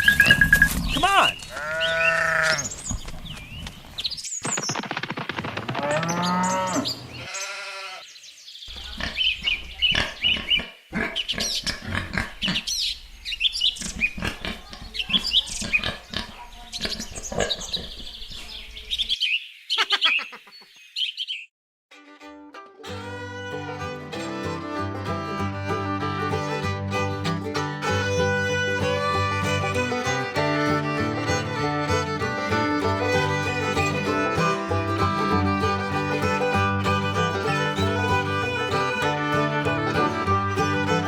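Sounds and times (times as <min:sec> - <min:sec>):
birds chirping and twittering: 0:00.0 - 0:04.9, 0:05.8 - 0:21.5
drawn-out livestock calls: 0:01.5 - 0:02.7, 0:05.8 - 0:08.0.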